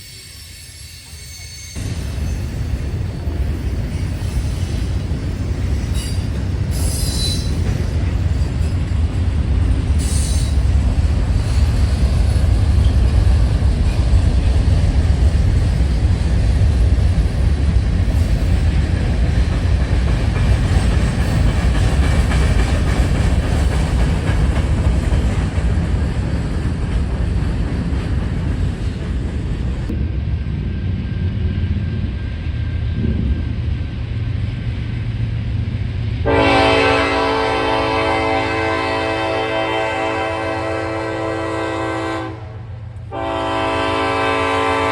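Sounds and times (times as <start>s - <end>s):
high wheel squeal: 0.0s - 2.6s, 3.7s - 8.9s
train wheels rumbling on rails: 0.0s - 44.9s.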